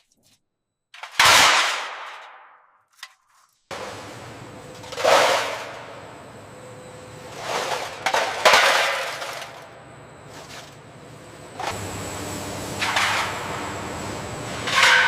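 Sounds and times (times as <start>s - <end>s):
crashing impacts: 6.9s - 15.0s.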